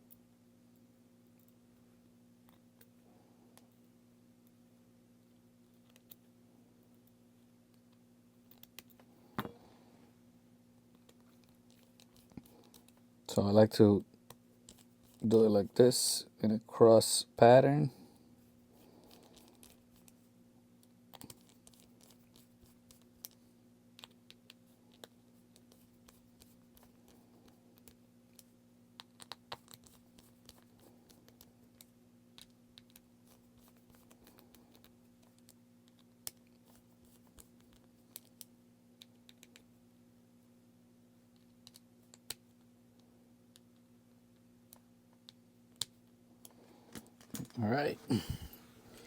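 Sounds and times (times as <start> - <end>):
steady low hum: 42.6 - 49.0.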